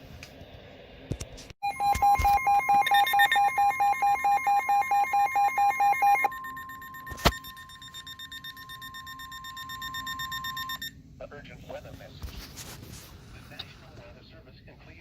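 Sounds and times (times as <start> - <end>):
faint high pulsing: 1.6 - 10.9
rapid electronic beeping: 1.6 - 10.9
steady alarm tone: 1.6 - 11.0.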